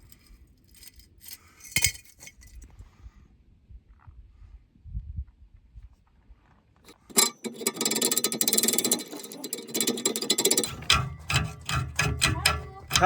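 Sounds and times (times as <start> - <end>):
hand ratchet clicking: 6.9 - 13.0.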